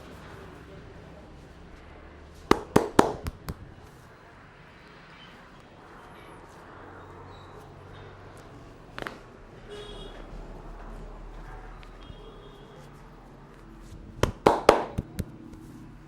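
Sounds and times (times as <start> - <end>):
hands slapping head: 2.5 - 3.9, 14.2 - 15.8.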